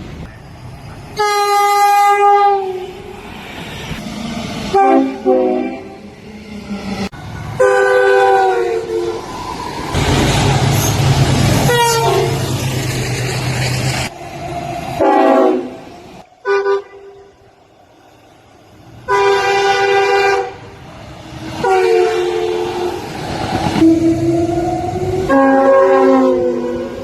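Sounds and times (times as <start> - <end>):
passing train noise: 0.0 - 27.0
train horn blasts: 1.2 - 3.0, 4.7 - 6.0, 7.6 - 9.2, 11.7 - 12.4, 15.0 - 17.4, 19.1 - 20.7, 21.6 - 23.0, 23.8 - 24.5, 25.2 - 26.9.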